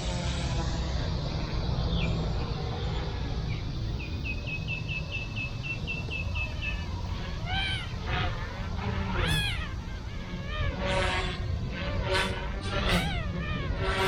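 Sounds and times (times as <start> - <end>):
steady low rumble: 0.0 - 14.0
bird chirping: 0.5 - 14.0.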